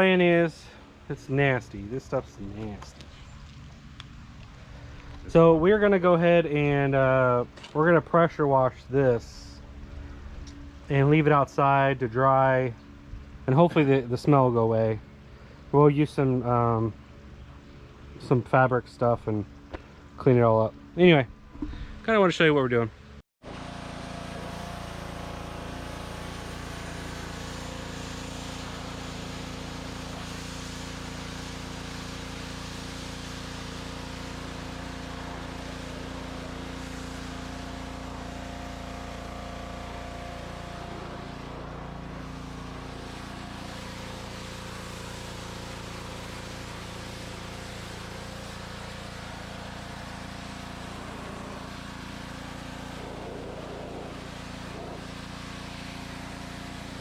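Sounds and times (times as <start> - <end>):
pressure washer motor drone: 0.0 - 57.0
hiss of water spray: 23.6 - 57.0.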